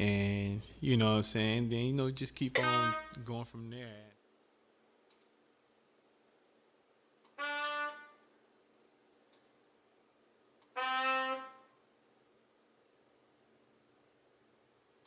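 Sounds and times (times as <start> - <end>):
sampled wind instrument notes: 2.5 - 4.1, 7.3 - 8.3, 10.8 - 11.7.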